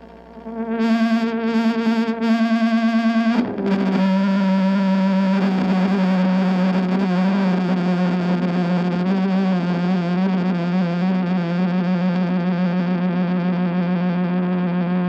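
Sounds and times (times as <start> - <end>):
distorted electric guitar note: 0.0 - 1.4, 3.2 - 11.7.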